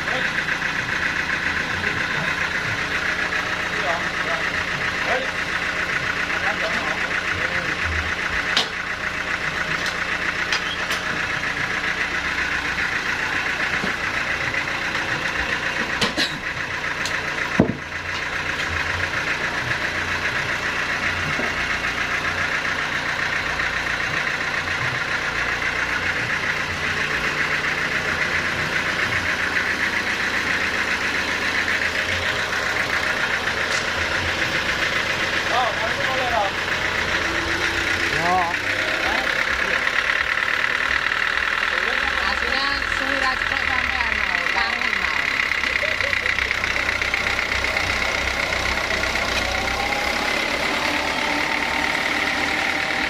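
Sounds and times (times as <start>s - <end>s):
sawmill saw cutting wood: 0.0s - 53.0s
sharp knocks: 17.5s - 17.9s.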